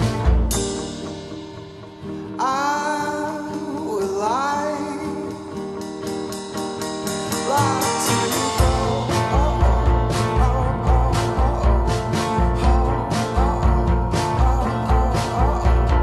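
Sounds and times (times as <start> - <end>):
heavy bass beat: 0.0 - 1.9, 7.5 - 16.0
steady beat: 0.0 - 2.1, 6.1 - 16.0
guitar: 0.0 - 16.0
person singing: 1.7 - 16.0.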